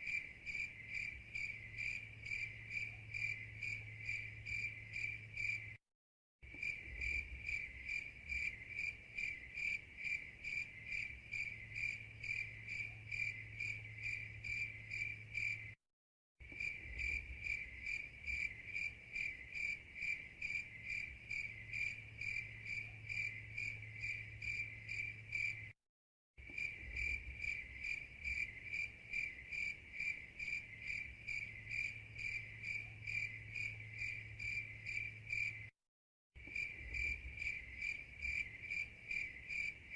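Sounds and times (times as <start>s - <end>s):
crickets chirping: 0.0s - 5.8s, 6.5s - 15.8s, 16.4s - 25.8s, 26.4s - 35.7s, 36.4s - 39.9s.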